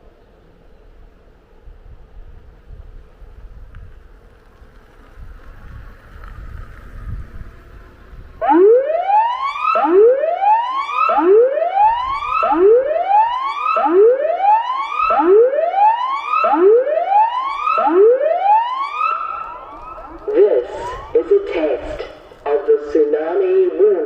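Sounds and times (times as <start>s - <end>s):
warning siren rising sweeps: 8.4s - 24.0s.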